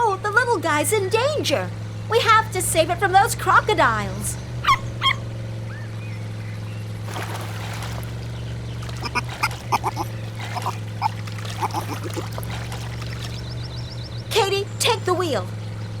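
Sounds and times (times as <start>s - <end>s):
low motor hum: 0.0s - 16.0s
high squeaky animal calls: 8.7s - 13.4s.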